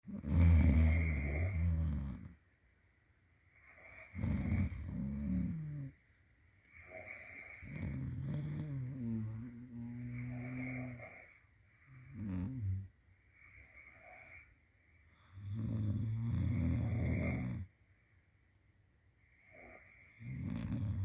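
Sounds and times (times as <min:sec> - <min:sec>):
quiet breaths: 0:00.0 - 0:21.0
people snoring: 0:00.1 - 0:02.4, 0:03.6 - 0:06.0, 0:06.7 - 0:14.5, 0:15.3 - 0:17.7, 0:19.4 - 0:21.0.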